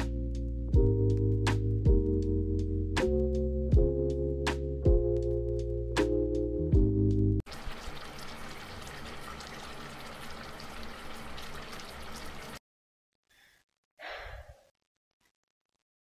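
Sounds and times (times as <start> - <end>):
hot oil sizzling and crackling: 7.4 - 12.6
brief breathy sound: 13.3 - 14.7.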